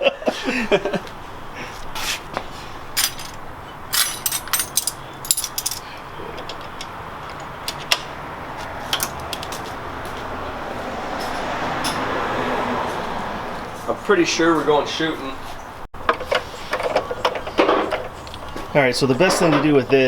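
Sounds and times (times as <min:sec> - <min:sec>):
metal hand tools clinking: 0:03.0 - 0:05.9.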